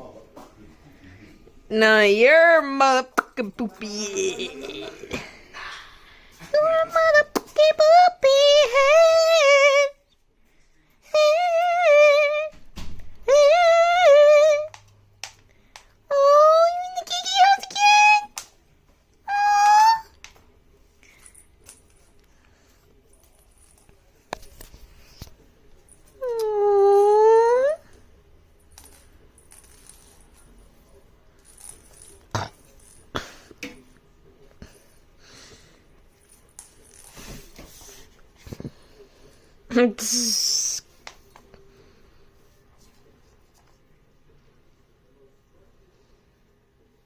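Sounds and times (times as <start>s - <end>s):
woman humming: 3.8s - 5.2s, 26.2s - 27.8s.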